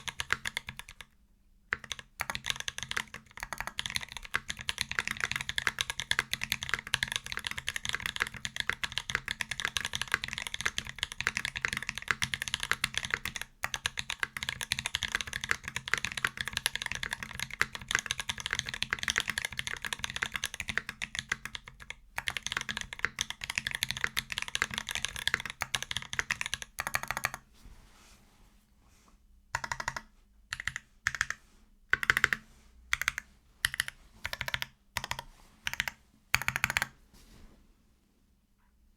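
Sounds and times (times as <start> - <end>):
mechanical keyboard typing: 0.0 - 27.4, 29.6 - 37.0.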